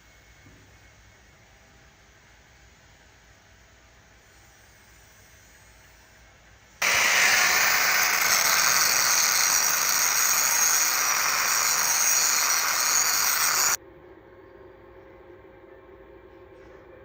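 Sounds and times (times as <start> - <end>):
welding arc crackling hiss: 6.8 - 13.8.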